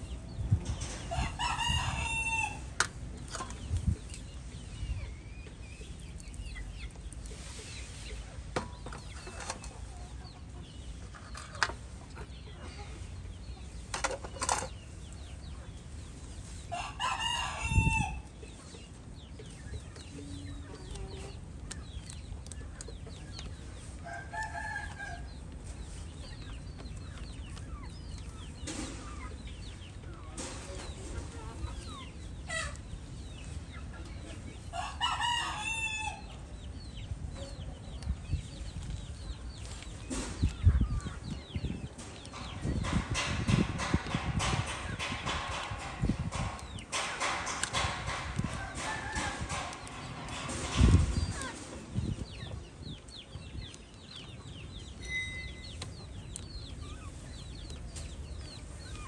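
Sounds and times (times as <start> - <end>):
chickens clucking: 0.0 - 59.0
rooster crowing: 34.8 - 36.2
sharp clicks and scrapes: 41.9 - 51.8.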